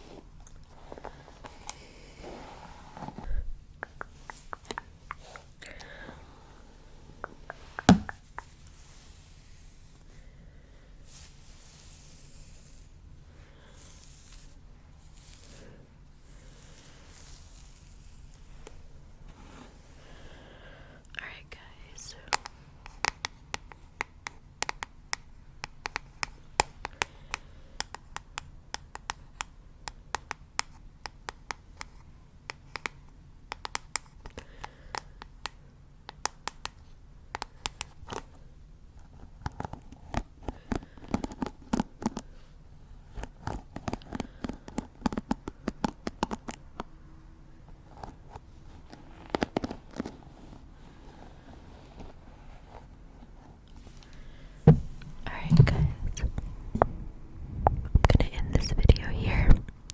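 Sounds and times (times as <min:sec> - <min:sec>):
scratchy hand clicks and crackles: 0:03.8 - 0:06.0, 0:32.5 - 0:38.3, 0:39.2 - 0:42.4, 0:43.2 - 0:46.9.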